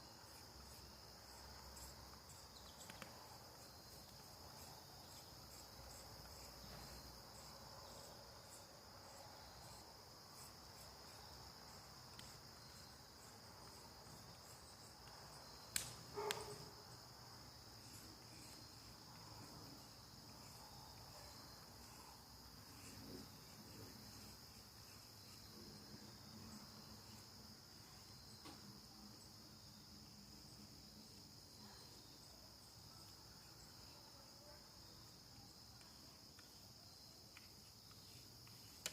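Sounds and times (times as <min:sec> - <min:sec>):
crickets chirping: 0:00.0 - 0:38.9
sharp clicks: 0:15.7 - 0:16.5.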